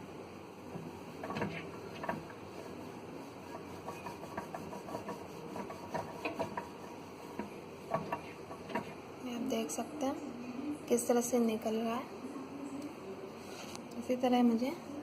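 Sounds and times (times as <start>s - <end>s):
scrubbing inside microwave: 0.6s - 9.1s.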